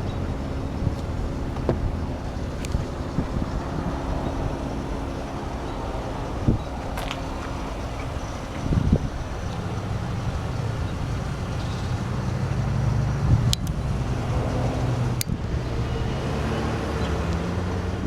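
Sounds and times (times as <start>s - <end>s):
vehicle engine rumbling: 0.0s - 18.0s
sharp clicks: 13.5s - 13.8s.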